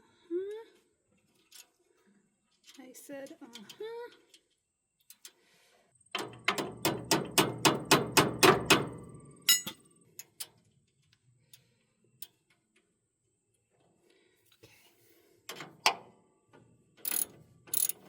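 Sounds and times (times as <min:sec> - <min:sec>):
hammer striking metal: 0:09.5 - 0:09.8.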